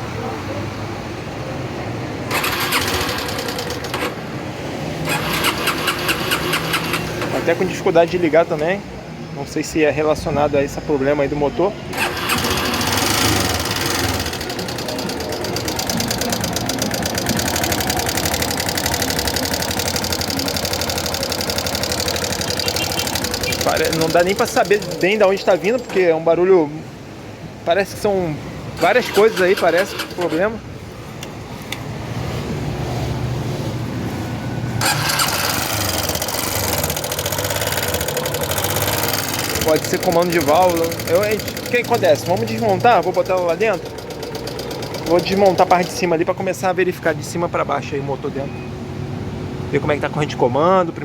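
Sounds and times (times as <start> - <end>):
motorcycle engine idling with clatter: 2.2 - 8.7, 11.9 - 26.4, 27.8 - 31.9, 34.8 - 47.2.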